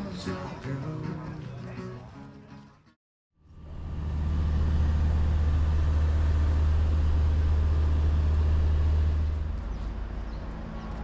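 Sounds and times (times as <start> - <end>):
vehicle rumbling: 3.4 - 11.0.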